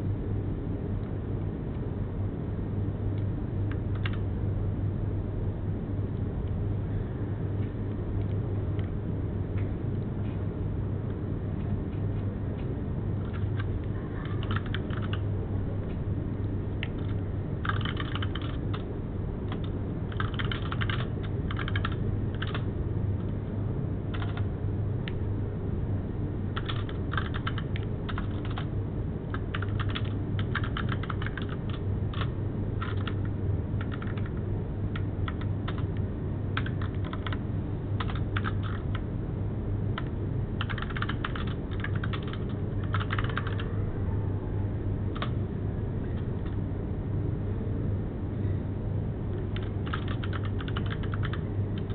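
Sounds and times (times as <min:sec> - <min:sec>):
steady low hum: 0:00.0 - 0:51.9
typing on computer keyboard: 0:03.7 - 0:04.2, 0:13.2 - 0:15.2, 0:16.8 - 0:18.8, 0:19.5 - 0:22.7, 0:24.1 - 0:24.5, 0:26.6 - 0:28.7, 0:29.3 - 0:34.4, 0:35.0 - 0:35.9, 0:36.6 - 0:37.4, 0:38.0 - 0:39.0, 0:40.0 - 0:43.7, 0:45.2 - 0:45.4, 0:49.5 - 0:51.9.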